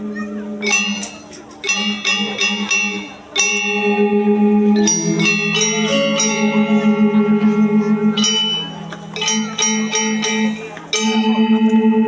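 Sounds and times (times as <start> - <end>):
low pulsing note: 0.0 - 1.0, 2.2 - 9.2
gamelan ensemble playing: 0.0 - 12.0.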